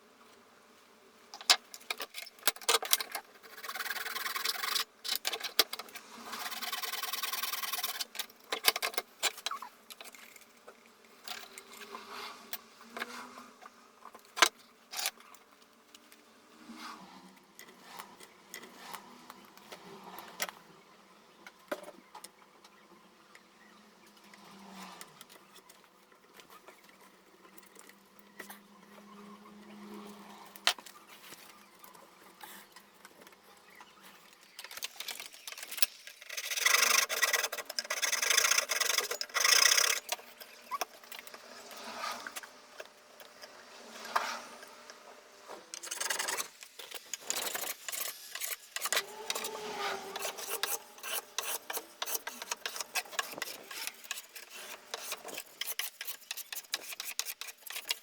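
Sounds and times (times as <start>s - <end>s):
hand tool scraping wood: 35.1s - 45.0s, 45.8s - 58.0s.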